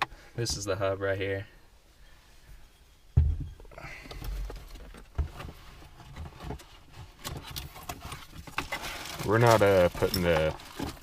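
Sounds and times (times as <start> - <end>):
knock: 3.2 - 3.5
sharp thump: 3.2 - 3.6.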